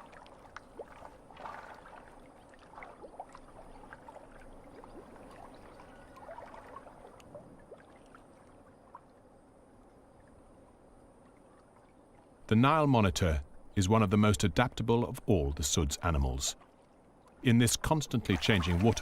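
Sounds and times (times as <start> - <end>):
small ticks and plops: 0.0 - 9.2
water gurgling and trickling: 0.0 - 19.0.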